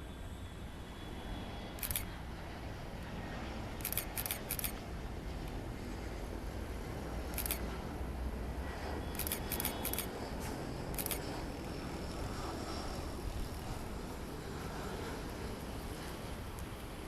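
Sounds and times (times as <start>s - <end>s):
steady low rumble: 1.7s - 17.0s
camera shutter clicks: 1.8s - 2.1s, 3.8s - 4.8s, 7.3s - 7.6s, 9.1s - 10.1s, 10.9s - 11.2s.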